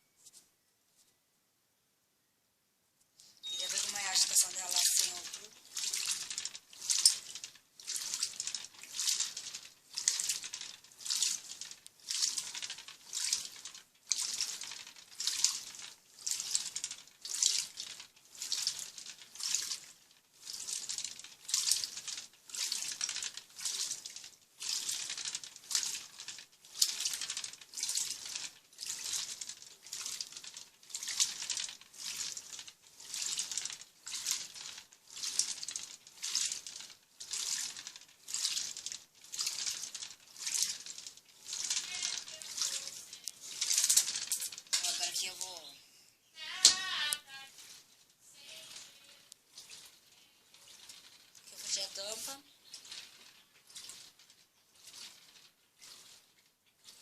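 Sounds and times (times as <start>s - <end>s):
washing machine agitating in water: 3.4s - 45.8s, 46.4s - 57.0s.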